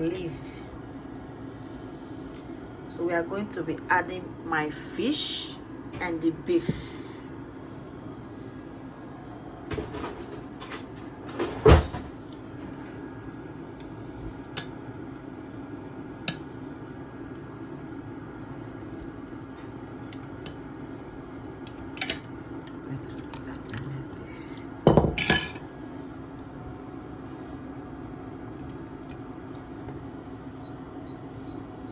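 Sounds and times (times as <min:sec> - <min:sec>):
pot and utensils clinking: 0:22.0 - 0:22.3, 0:24.9 - 0:25.6.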